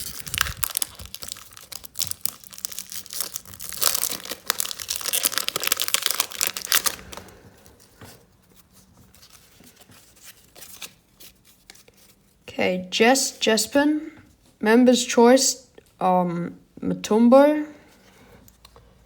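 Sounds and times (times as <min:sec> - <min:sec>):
card pack wrapper tearing: 0:00.0 - 0:07.4.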